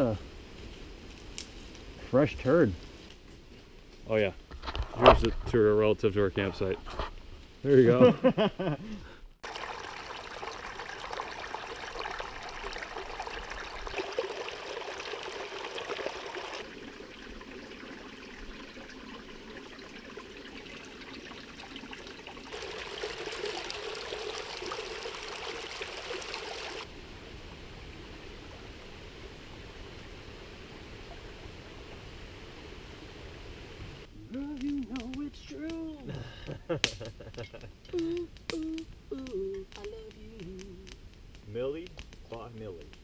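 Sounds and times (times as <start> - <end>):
stream water flowing: 9.4 - 34.1.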